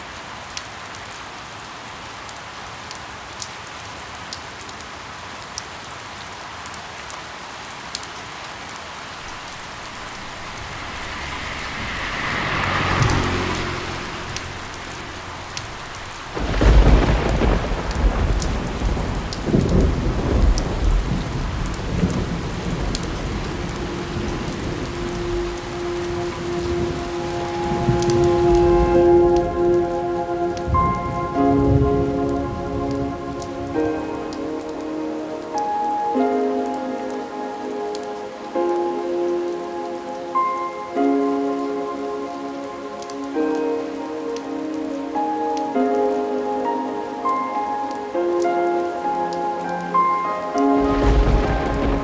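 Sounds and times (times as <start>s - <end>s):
steady rain falling: 0.0s - 52.0s
thunder clap and rumble: 9.2s - 29.7s, 50.8s - 52.0s.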